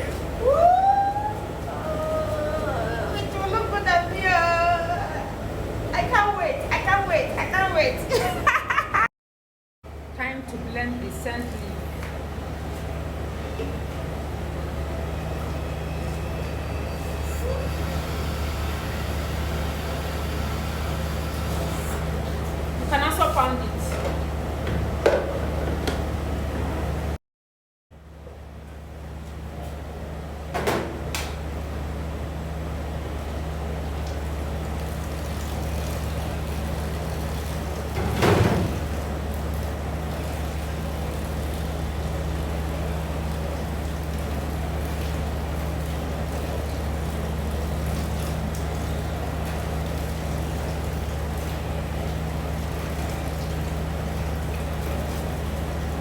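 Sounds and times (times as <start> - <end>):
kitchen blender running: 16.8 - 23.6.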